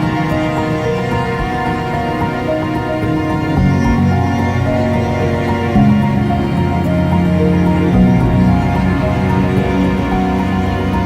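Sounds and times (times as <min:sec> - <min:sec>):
sustained synth notes: 0:00.0 - 0:11.0
steady low bass: 0:03.5 - 0:11.0.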